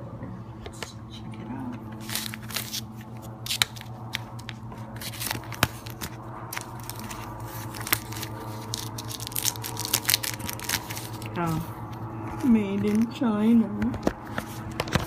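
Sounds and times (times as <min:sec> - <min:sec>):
steady low hum: 0:00.0 - 0:15.0
packaging rustling and tearing: 0:02.0 - 0:11.7.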